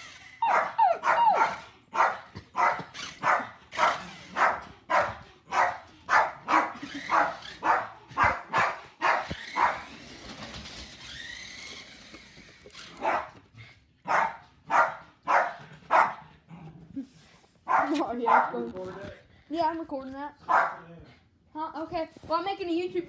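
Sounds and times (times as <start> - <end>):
dog barking: 0.4 - 9.9, 13.0 - 13.4, 14.0 - 16.2, 17.6 - 18.7, 20.4 - 20.9.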